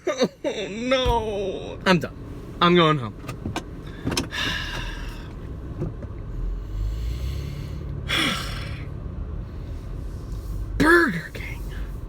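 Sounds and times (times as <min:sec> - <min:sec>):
car cabin rumble: 0:00.0 - 0:12.0
heavy breathy exhales: 0:06.5 - 0:08.9.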